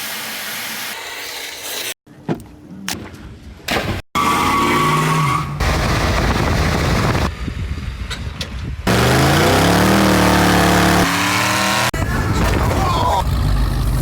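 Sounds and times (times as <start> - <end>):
engine revving: 8.9 - 12.0.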